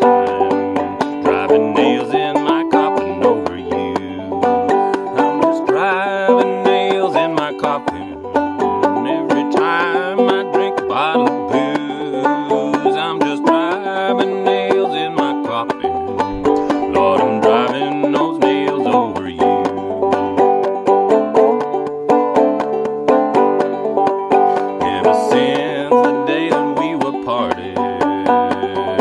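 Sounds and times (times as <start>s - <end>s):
bass line: 0.0s - 2.2s, 7.8s - 9.4s, 15.4s - 21.7s
banjo plucking and strumming: 0.0s - 29.0s.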